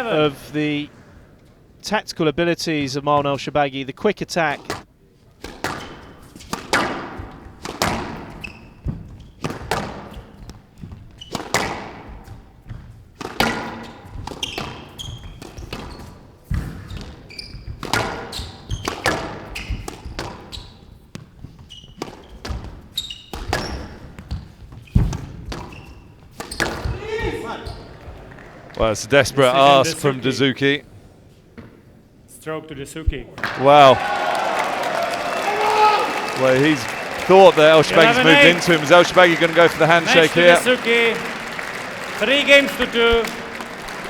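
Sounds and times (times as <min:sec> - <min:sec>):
ball hitting court walls: 0:04.6 - 0:20.5, 0:21.2 - 0:28.4
squash ball struck by rackets: 0:04.7 - 0:10.6, 0:11.3 - 0:17.2, 0:17.8 - 0:20.5, 0:22.0 - 0:27.1.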